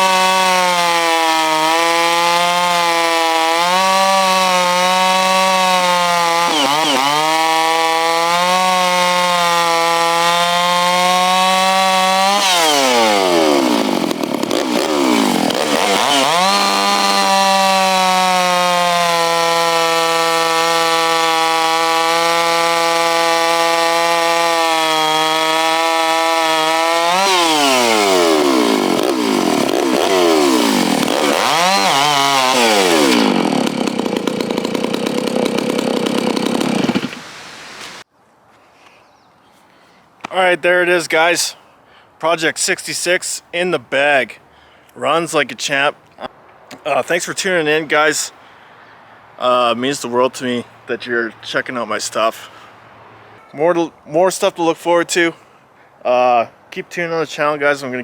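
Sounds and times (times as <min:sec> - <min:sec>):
chainsaw revving: 0:00.0 - 0:38.0.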